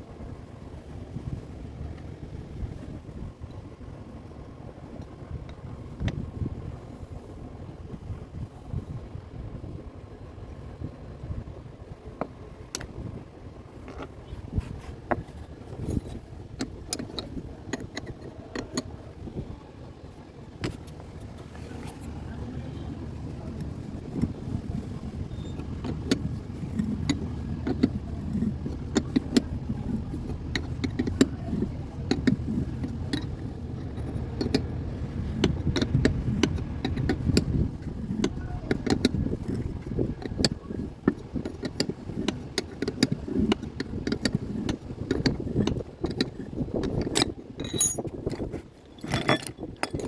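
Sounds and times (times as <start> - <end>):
steady low rumble: 0.0 - 50.0
metal tools clinking: 46.9 - 50.0.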